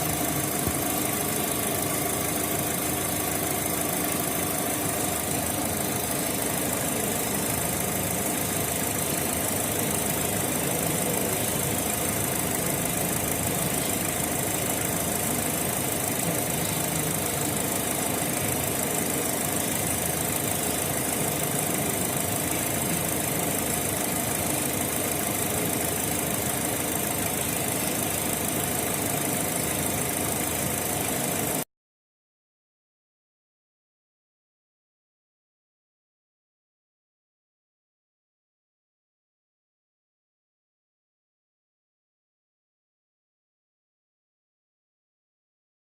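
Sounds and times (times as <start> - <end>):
car engine idling and misfiring: 0.0 - 31.6.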